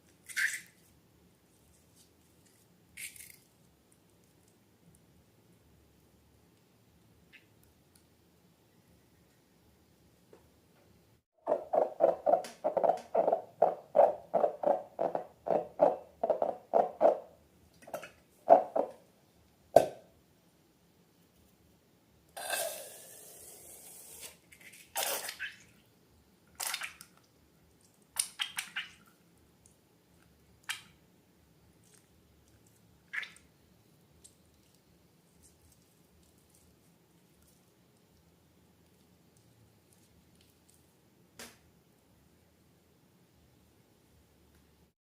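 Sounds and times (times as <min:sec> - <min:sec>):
wet slime squelches: 0:26.5 - 0:31.0, 0:31.6 - 0:41.0.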